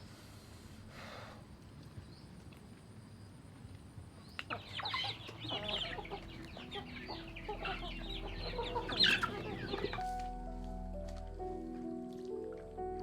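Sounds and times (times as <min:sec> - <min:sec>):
chickens clucking: 0:04.4 - 0:10.4.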